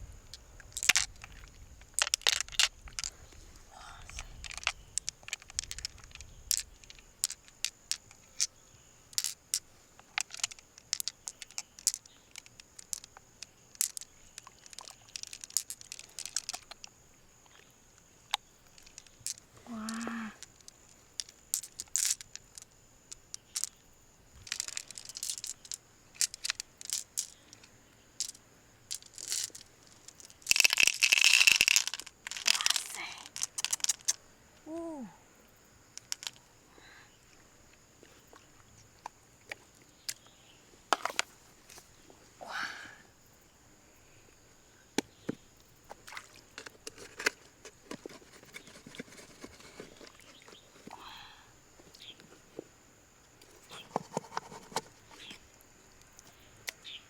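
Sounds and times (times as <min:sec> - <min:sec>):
shells clicking and scraping: 0:00.7 - 0:03.1, 0:04.0 - 0:16.9, 0:18.4 - 0:23.8, 0:24.4 - 0:34.3, 0:36.0 - 0:36.4, 0:40.9 - 0:41.9, 0:46.5 - 0:51.0, 0:53.4 - 0:55.4
rough scraping: 0:53.6 - 0:55.4.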